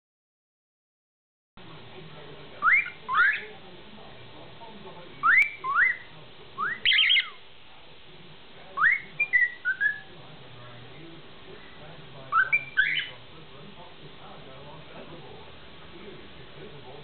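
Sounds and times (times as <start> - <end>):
cockatiel whistling: 2.6 - 3.5, 5.2 - 7.4, 8.8 - 10.1, 12.3 - 13.1.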